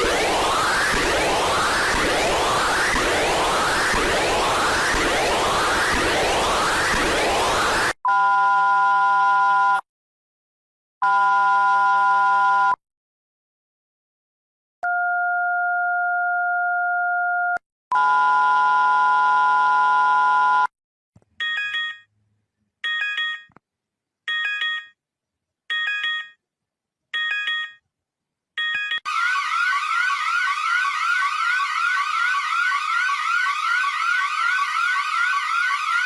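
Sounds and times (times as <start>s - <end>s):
high warbling electronic chirp: 0.0s - 7.9s.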